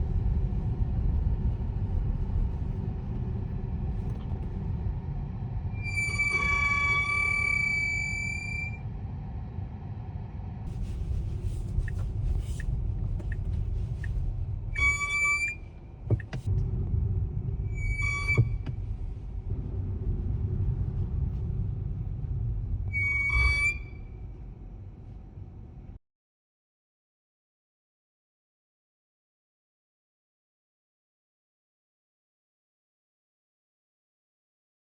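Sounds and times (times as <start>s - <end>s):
car rumble: 0.0s - 26.0s
brakes squealing: 5.5s - 8.9s, 10.7s - 16.5s, 17.4s - 22.0s, 22.6s - 24.6s.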